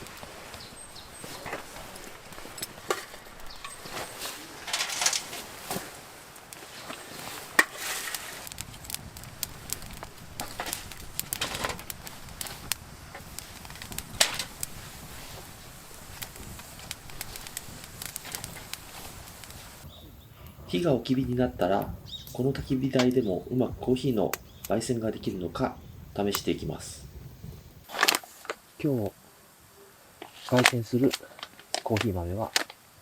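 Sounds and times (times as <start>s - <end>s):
sharp pops and snaps: 0.0s - 20.6s, 24.1s - 24.8s, 30.2s - 32.8s
soft fire hiss: 0.0s - 33.0s
wood fire crackling: 0.0s - 33.0s.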